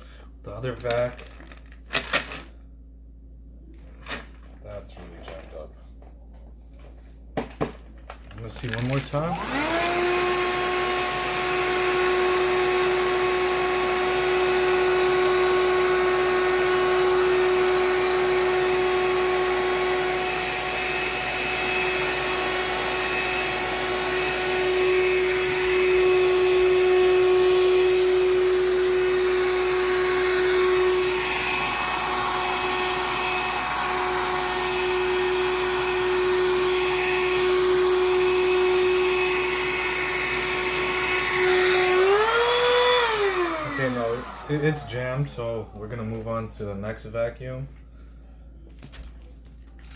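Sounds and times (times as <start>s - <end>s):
handheld vacuum running: 8.4s - 46.4s.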